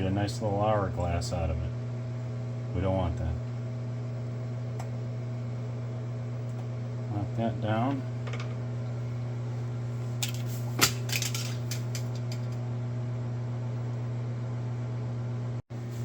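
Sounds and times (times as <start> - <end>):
low steady hum: 0.0 - 16.0
metal tools clinking: 10.2 - 12.6.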